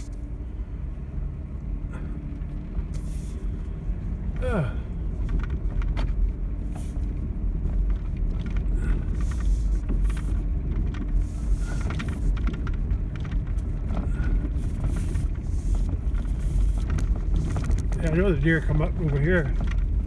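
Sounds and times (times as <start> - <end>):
truck engine and road rumble: 0.0 - 20.0
rattles and knocks: 5.2 - 20.0.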